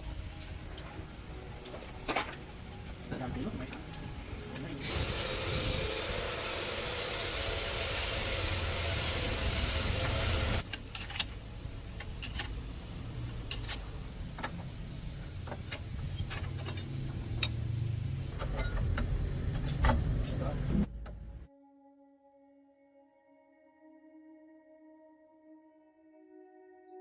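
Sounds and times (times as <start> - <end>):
engine rumbling: 0.0 - 21.5
loud hiss: 4.8 - 10.6
metallic clicks and knocks: 10.6 - 11.4, 12.0 - 12.6, 13.4 - 14.7, 15.4 - 17.6.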